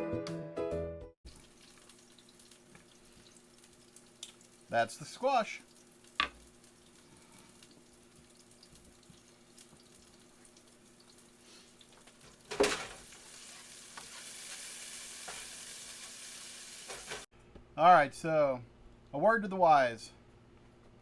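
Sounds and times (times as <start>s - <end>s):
food sizzling in a skillet: 1.3s - 17.3s.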